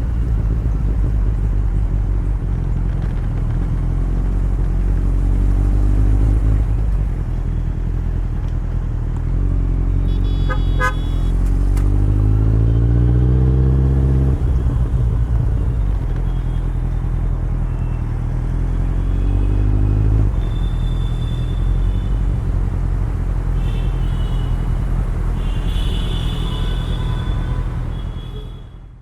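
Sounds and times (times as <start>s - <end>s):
motorcycle engine revving: 0.0s - 8.4s, 9.0s - 17.2s
vehicle horn beeps: 10.0s - 11.7s, 20.4s - 22.2s, 23.6s - 24.6s, 25.4s - 28.9s.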